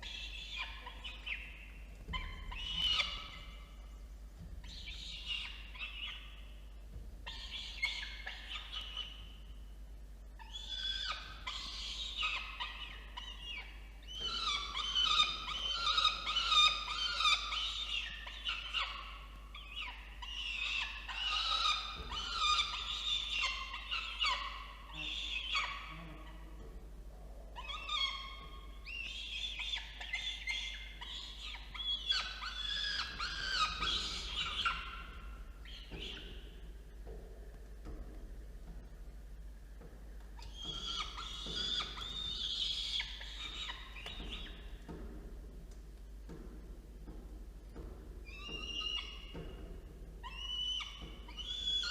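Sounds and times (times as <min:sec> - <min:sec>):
falcon chicks chirping: 0:00.0 - 0:06.6, 0:07.2 - 0:09.4, 0:10.5 - 0:26.2, 0:27.6 - 0:36.6, 0:40.4 - 0:44.8, 0:48.3 - 0:49.5, 0:50.2 - 0:51.9.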